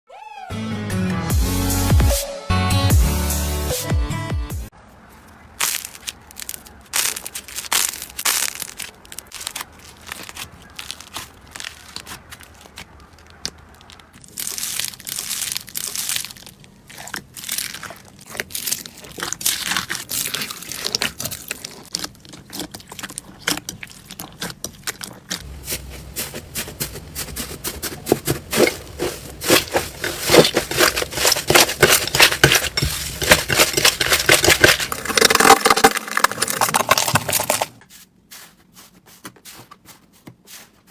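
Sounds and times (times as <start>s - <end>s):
slime crackling and popping: 5.6s - 25.4s, 28.1s - 37.8s.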